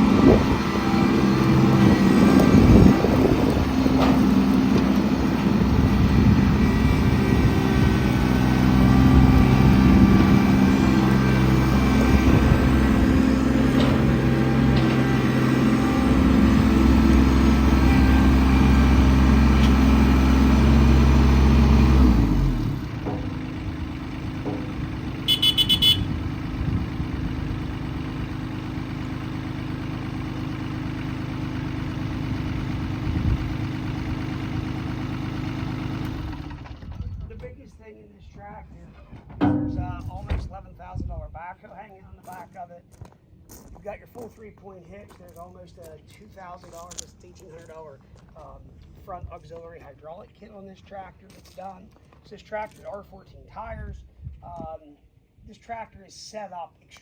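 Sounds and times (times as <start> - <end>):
tractor diesel engine running: 0.0 - 37.3, 39.4 - 40.5
short beeps: 25.3 - 26.0.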